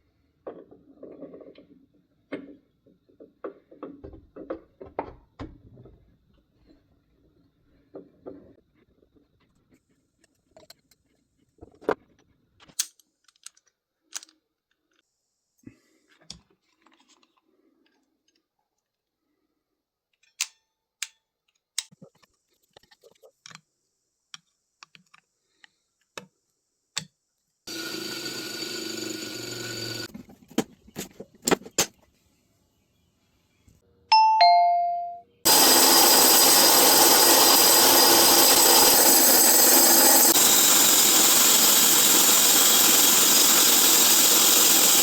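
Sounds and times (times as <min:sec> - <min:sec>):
tools clicking and knocking: 0:20.1 - 0:22.3
small motor running: 0:27.7 - 0:30.1, 0:35.5 - 0:45.0.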